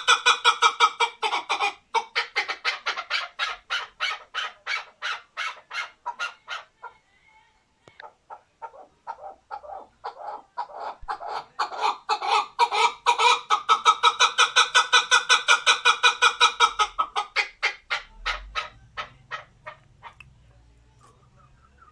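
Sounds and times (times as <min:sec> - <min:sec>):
partridge clucking call: 0:08.0 - 0:20.3.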